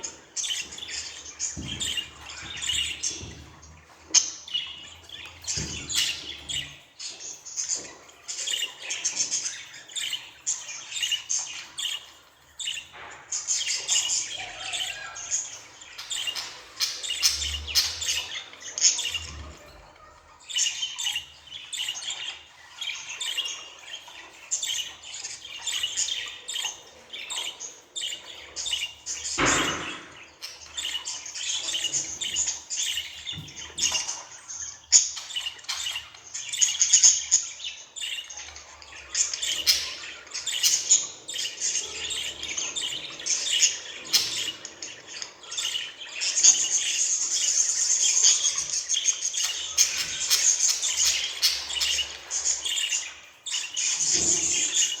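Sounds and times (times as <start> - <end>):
budgerigar chattering and warbling: 39.2 - 45.8.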